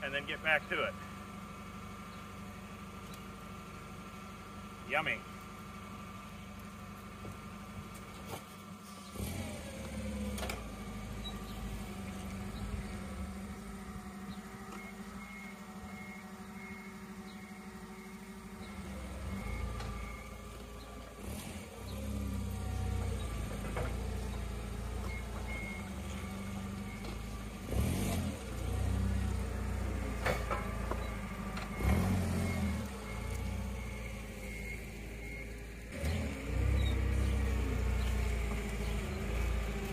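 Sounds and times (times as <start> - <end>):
engine rumbling: 0.0 - 39.9.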